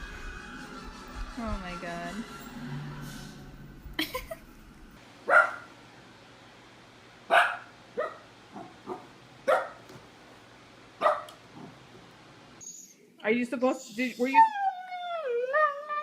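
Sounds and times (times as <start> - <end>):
dog barking: 5.2 - 5.7, 7.3 - 9.9, 11.0 - 11.7.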